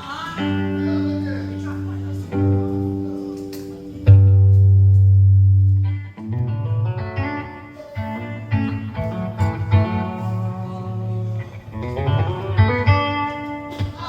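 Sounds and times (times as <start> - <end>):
bass line: 0.0 - 13.2
guitar chords and plucked notes: 0.0 - 14.0.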